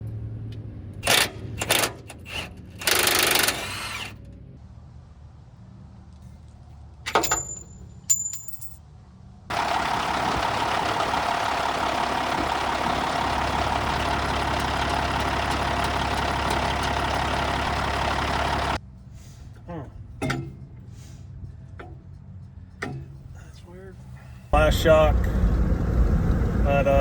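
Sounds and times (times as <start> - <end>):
sharp metallic clinks: 7.1 - 8.8.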